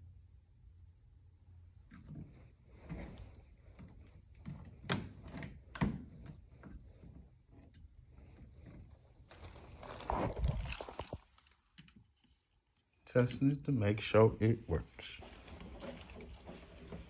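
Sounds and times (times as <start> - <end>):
rustling: 6.6 - 13.0, 14.5 - 17.0.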